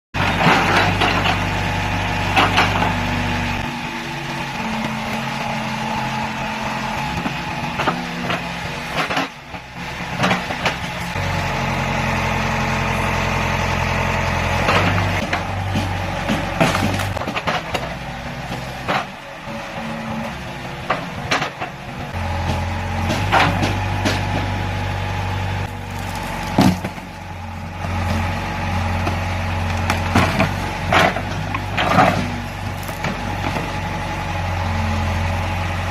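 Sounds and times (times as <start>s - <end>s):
backhoe diesel engine: 0.1s - 35.9s
wood cracking and snapping: 25.7s - 27.2s, 31.8s - 33.6s.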